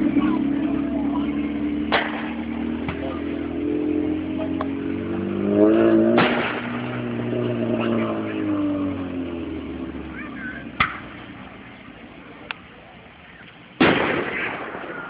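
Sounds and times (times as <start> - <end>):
vehicle engine revving: 0.0 - 14.8
firework bangs: 1.9 - 3.2, 6.0 - 7.0, 13.8 - 15.0.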